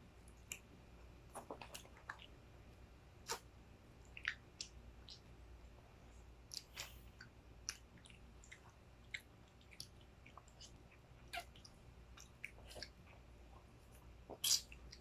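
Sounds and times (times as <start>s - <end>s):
people chewing mangoes: 3.2s - 5.4s, 6.4s - 15.0s.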